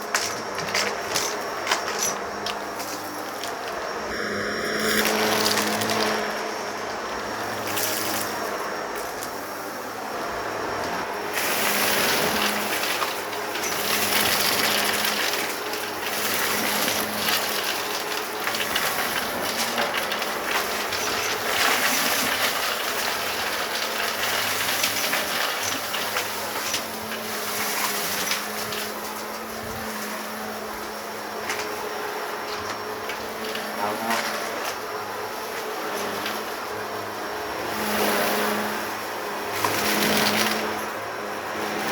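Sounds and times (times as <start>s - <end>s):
vacuum cleaner running: 0.0s - 41.9s
grit crackling and ticking: 12.0s - 29.8s.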